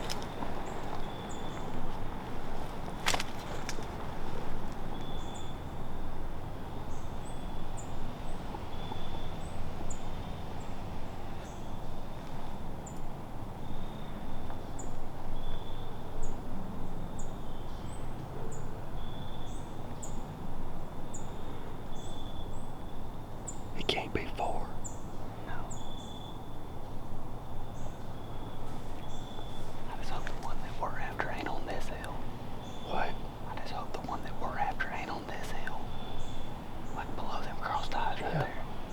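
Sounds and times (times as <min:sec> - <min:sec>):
small bird chirping: 0:23.5 - 0:26.6, 0:27.4 - 0:38.9
low background rumble: 0:23.7 - 0:38.9.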